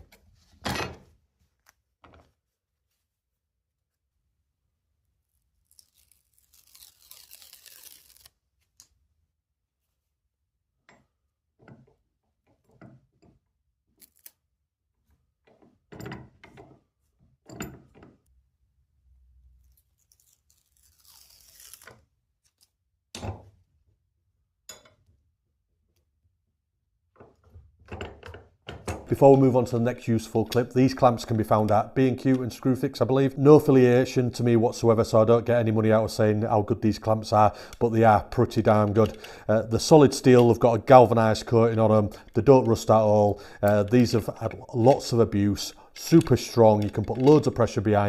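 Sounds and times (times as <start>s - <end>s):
long tearing sound: 5.6s - 8.4s, 19.8s - 22.8s
knocks and clicks of tools: 27.1s - 29.6s.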